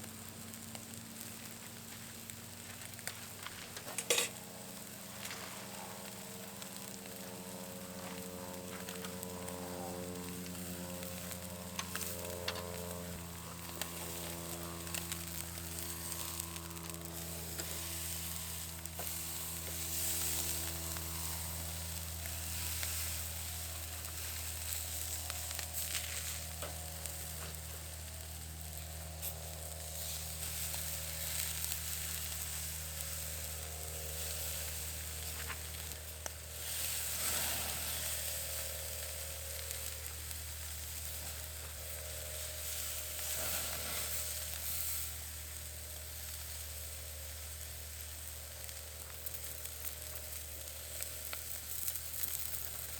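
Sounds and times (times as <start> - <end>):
steady low hum: 0.0 - 52.9
food sizzling in a pan: 13.1 - 52.9.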